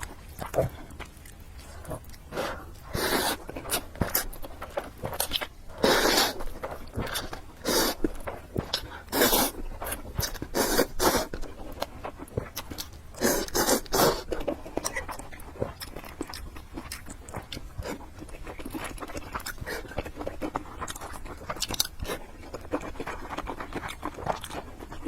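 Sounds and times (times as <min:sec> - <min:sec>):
chewing: 0:00.0 - 0:25.0
person slurping noodles: 0:02.4 - 0:04.2, 0:05.8 - 0:06.5, 0:07.1 - 0:08.1, 0:09.1 - 0:09.6, 0:10.2 - 0:11.3, 0:13.2 - 0:14.3.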